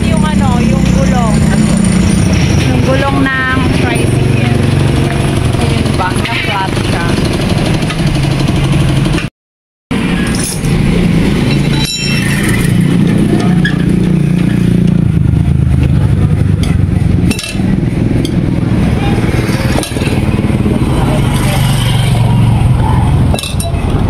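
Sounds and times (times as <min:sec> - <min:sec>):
sharp clink: 0:11.4 - 0:12.8.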